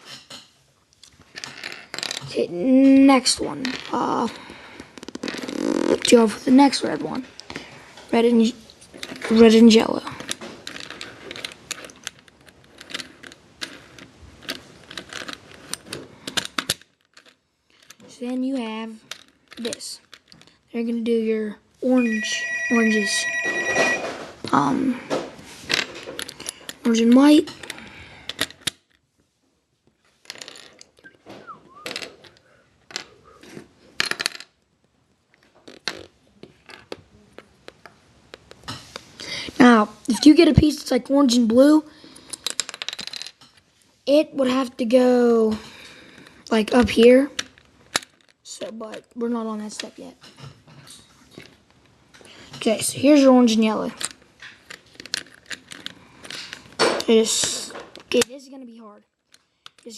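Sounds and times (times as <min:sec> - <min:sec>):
puzzle cube clicking and rattling: 0:05.0 - 0:06.2, 0:08.9 - 0:18.0, 0:19.1 - 0:20.6, 0:25.7 - 0:29.0, 0:30.2 - 0:31.0, 0:35.6 - 0:38.6, 0:42.3 - 0:43.4, 0:46.6 - 0:49.1, 0:53.6 - 0:58.3.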